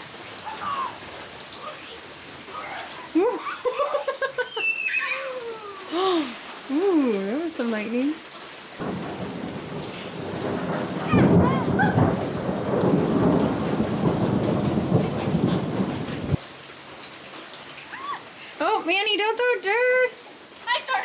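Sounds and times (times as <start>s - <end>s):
heavy rain: 0.0s - 21.0s
thunder rumbling: 8.8s - 16.4s.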